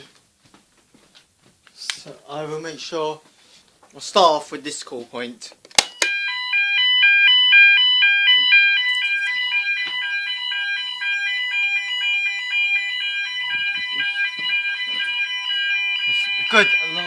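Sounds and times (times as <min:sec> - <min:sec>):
fire alarm alternating tone: 0:05.8 - 0:17.0.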